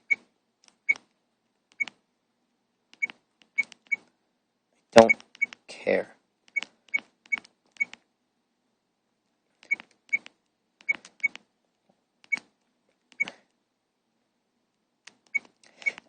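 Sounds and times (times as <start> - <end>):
phone keypad clicks with beeps: 1.7 - 2.0, 6.5 - 8.0, 9.6 - 11.4.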